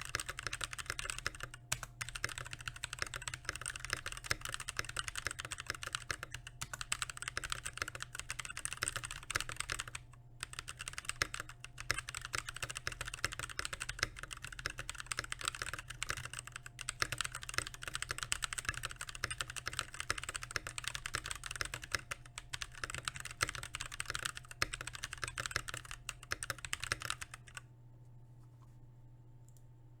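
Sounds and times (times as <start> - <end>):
mechanical keyboard typing: 0.0 - 27.6.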